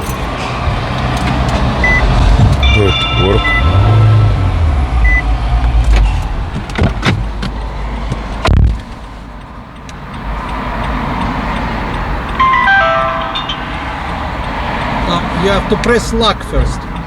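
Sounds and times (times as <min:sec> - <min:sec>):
falling electronic beeps: 0:02.6 - 0:04.4, 0:12.4 - 0:14.0
car door shutting: 0:05.6 - 0:09.0.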